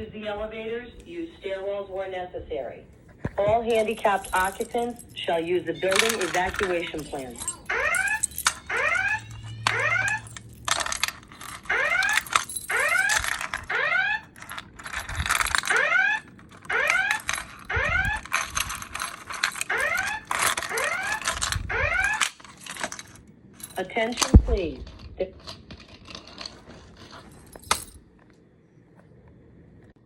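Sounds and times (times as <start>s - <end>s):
fire alarm whoop sweeps: 8.7s - 10.3s.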